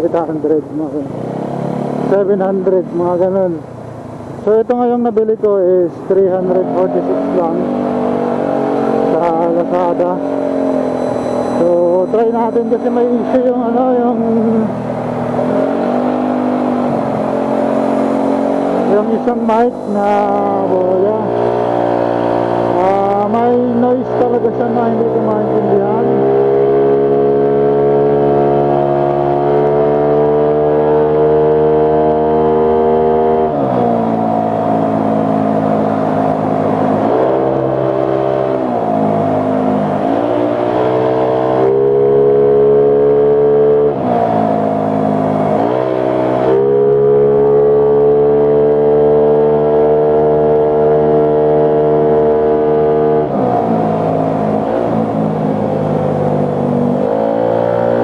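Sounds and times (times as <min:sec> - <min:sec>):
motorcycle engine running: 0:00.0 - 0:32.2.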